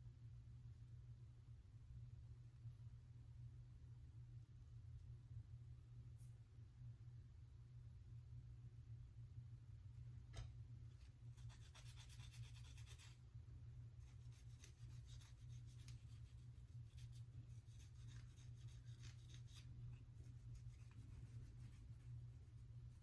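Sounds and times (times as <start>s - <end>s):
steady low hum: 0.0s - 23.0s
fingers rubbing on wig: 14.0s - 23.0s.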